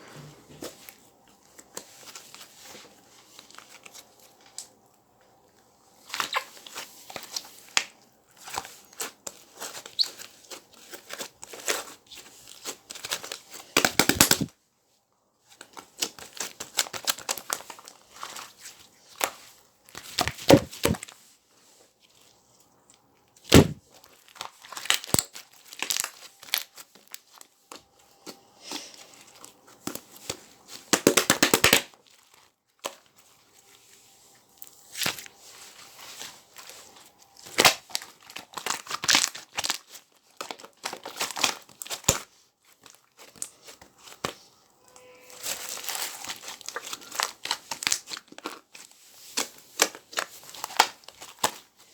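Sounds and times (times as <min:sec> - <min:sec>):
sharp crack: 0:23.5 - 0:23.8.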